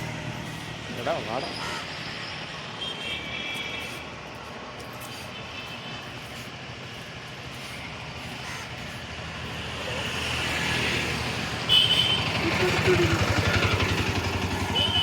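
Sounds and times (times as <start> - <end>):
vehicle engine approaching: 9.4 - 15.0.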